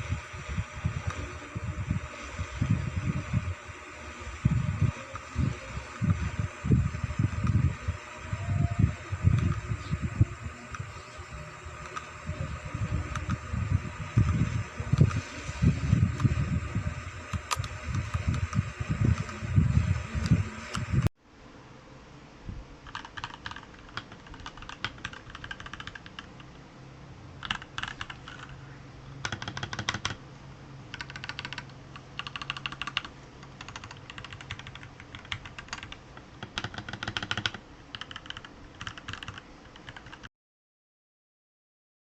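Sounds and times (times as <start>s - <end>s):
mechanical keyboard typing: 9.2s - 16.4s, 22.8s - 26.6s, 27.4s - 28.6s, 29.2s - 30.2s, 30.9s - 40.3s.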